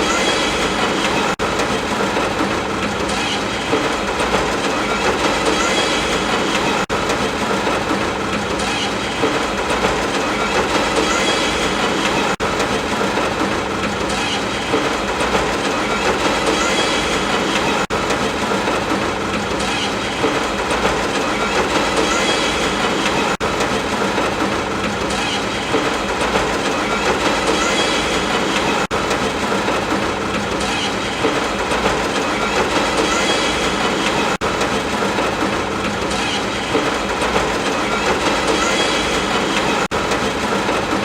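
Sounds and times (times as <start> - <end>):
heavy rainfall: 0.0 - 41.0.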